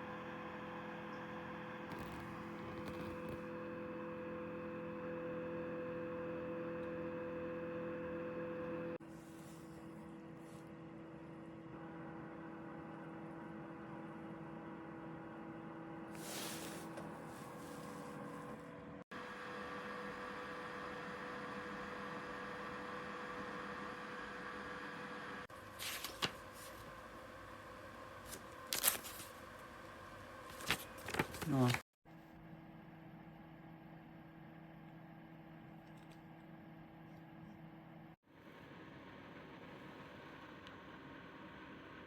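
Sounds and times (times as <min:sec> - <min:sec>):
dehumidifier humming: 0:19.4 - 0:31.8.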